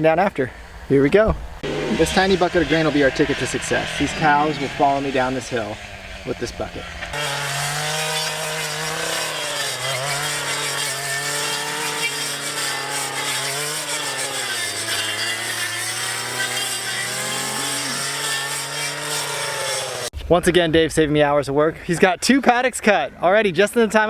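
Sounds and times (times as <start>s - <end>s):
brush cutter engine running: 1.6s - 20.1s.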